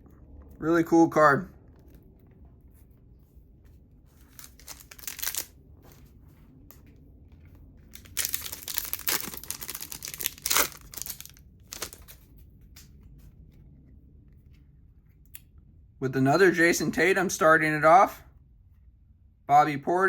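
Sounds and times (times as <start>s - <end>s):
foil wrapper tearing and crinkling: 4.3s - 5.5s, 7.9s - 12.2s.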